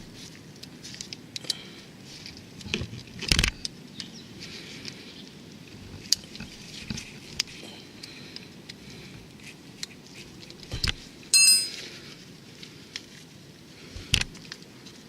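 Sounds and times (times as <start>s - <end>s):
ringing metallic clink: 11.4s - 11.9s.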